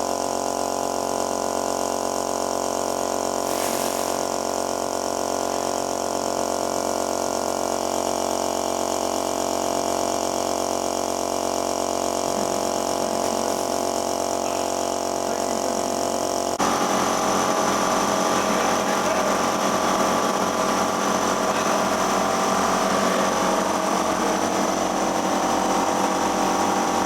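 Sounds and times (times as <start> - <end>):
buzzy power tool: 0.0 - 27.0
motor-driven machine humming: 9.7 - 27.0.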